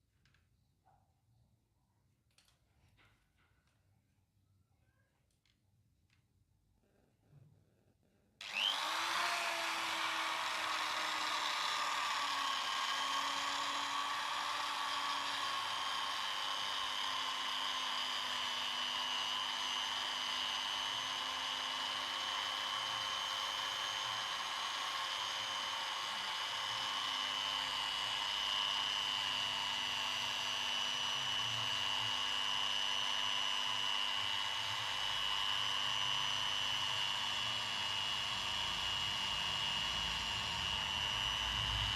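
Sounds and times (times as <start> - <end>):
electric drill motor whine: 8.4 - 41.9.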